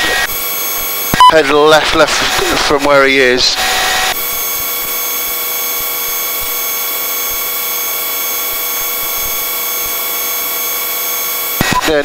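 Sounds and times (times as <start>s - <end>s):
helicopter engine and rotor: 0.0s - 12.0s
whining tones: 0.0s - 12.0s.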